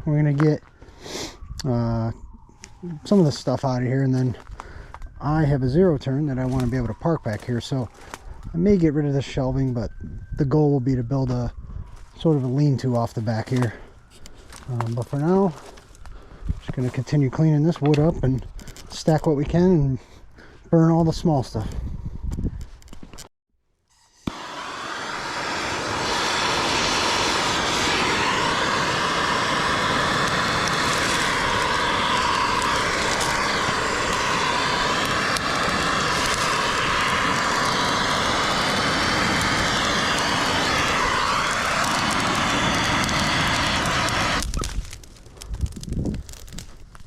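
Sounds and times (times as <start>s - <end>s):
chainsaw cutting wood: 24.2s - 45.0s.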